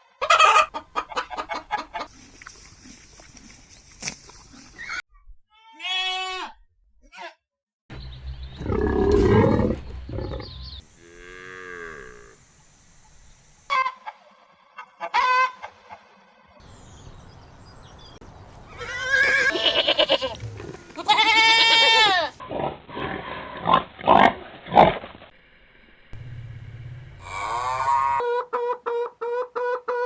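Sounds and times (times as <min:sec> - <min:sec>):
goats bleating: 0:18.7 - 0:22.4.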